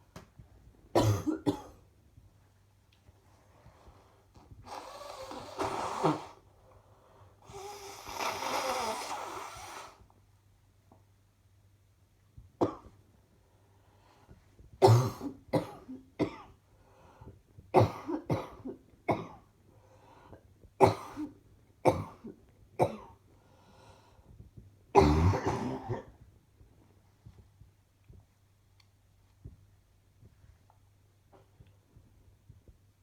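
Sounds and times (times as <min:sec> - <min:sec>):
woman coughing: 0:01.0 - 0:01.8, 0:25.0 - 0:26.1.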